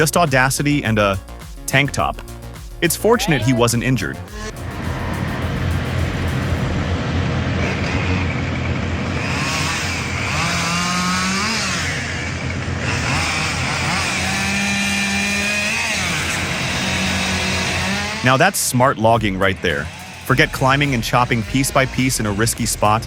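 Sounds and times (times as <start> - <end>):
chainsaw engine running: 3.8 - 18.6, 19.2 - 23.0.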